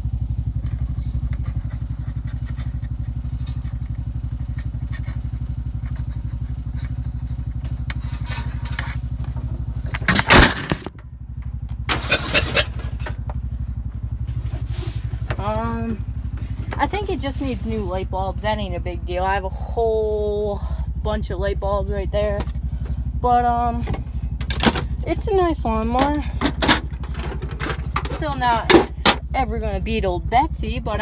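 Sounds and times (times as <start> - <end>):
lawnmower engine idling: 0.0 - 31.0
loud clatter: 7.9 - 11.0, 11.9 - 13.2, 26.0 - 29.3.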